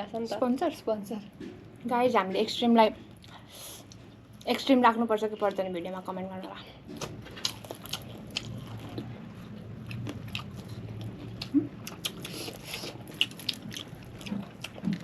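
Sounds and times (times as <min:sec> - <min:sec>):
crunching and chewing: 0:06.8 - 0:15.0.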